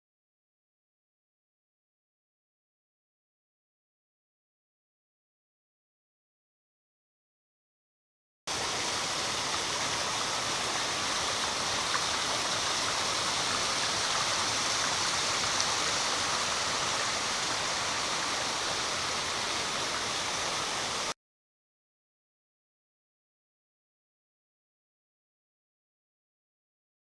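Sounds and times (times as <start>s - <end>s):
stream water flowing: 8.5s - 21.2s.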